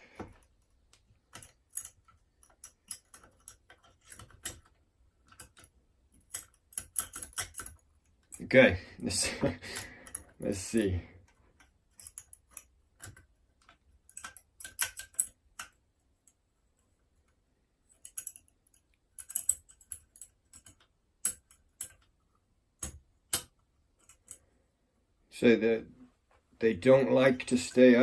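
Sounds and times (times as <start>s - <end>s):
lock pick clicking in a lock: 1.3s - 8.4s, 11.6s - 15.8s, 18.0s - 22.1s, 22.8s - 24.4s.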